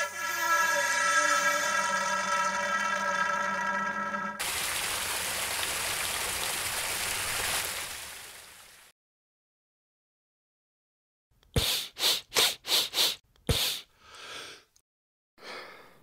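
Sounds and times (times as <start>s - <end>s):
electronic tone with overtones: 0.0s - 4.4s.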